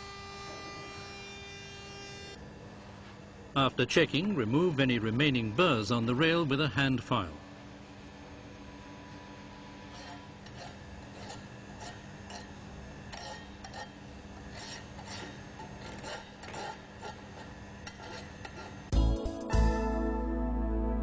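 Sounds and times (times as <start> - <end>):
hand file rasping on steel: 9.9 - 18.8
music: 18.9 - 21.0.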